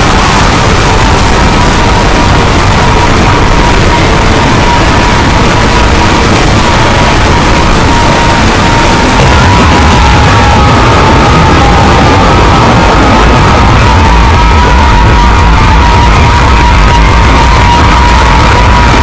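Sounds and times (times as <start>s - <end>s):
loud dense music: 0.0s - 19.0s
steady tone: 0.0s - 19.0s.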